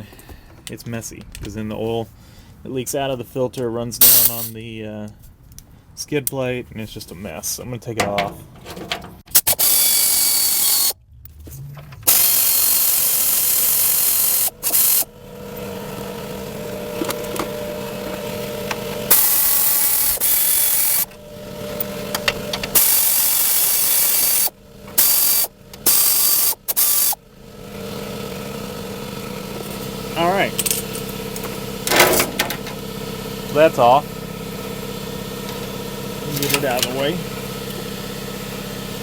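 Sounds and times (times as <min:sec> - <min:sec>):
power tool bursts: 0:04.0 - 0:04.5, 0:09.3 - 0:11.0, 0:12.0 - 0:39.0.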